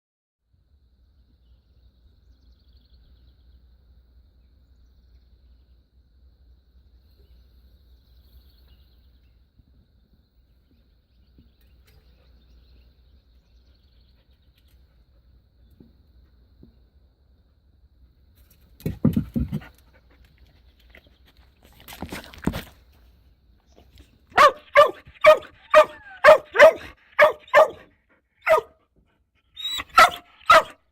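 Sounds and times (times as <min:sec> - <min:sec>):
birds chirping and trilling: 0:23.8 - 0:27.8, 0:29.6 - 0:30.8.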